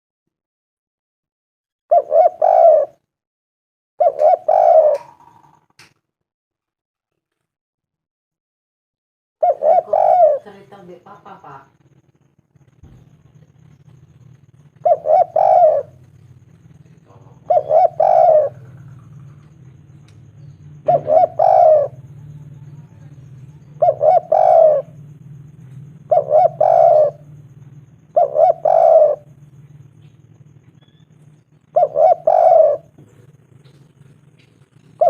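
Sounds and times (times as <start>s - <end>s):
dove cooing: 1.9s - 3.0s, 4.0s - 5.7s, 9.4s - 11.6s, 12.8s - 35.0s
low steady hum: 9.6s - 35.0s.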